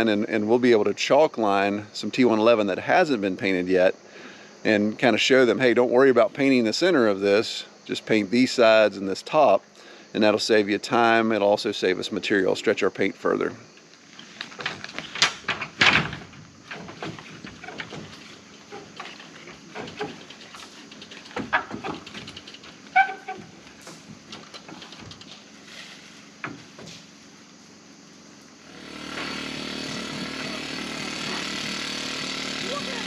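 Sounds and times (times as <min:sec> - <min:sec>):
knocks and clatter: 0:14.5 - 0:25.4
machine humming: 0:26.4 - 0:33.0.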